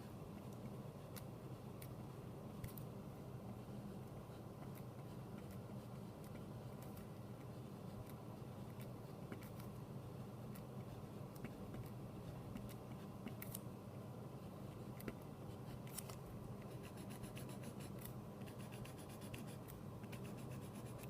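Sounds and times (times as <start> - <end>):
steady low hum: 0.0 - 21.0
pencil scratching on paper: 16.6 - 21.0.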